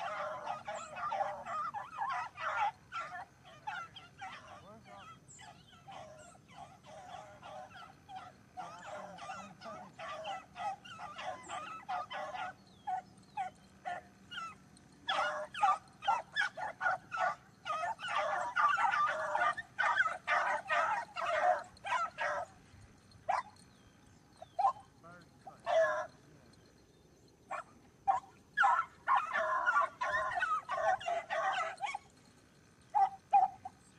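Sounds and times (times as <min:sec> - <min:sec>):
pack of dogs baying: 0:00.0 - 0:33.9.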